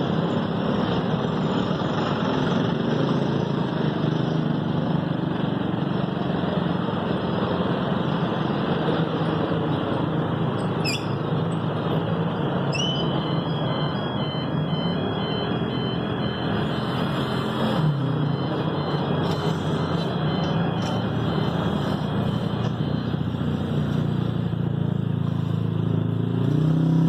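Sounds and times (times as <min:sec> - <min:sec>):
motor vehicle engines running: 0:00.0 - 0:27.0
brief high chirps: 0:12.7 - 0:13.4.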